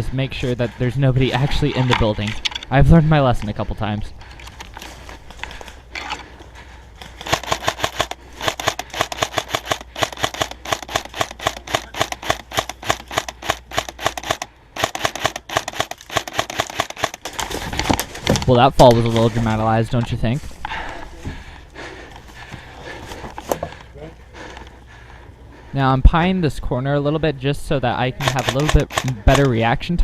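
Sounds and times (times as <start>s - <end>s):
airsoft rifle rapid shots: 7.2s - 17.6s, 28.2s - 29.6s.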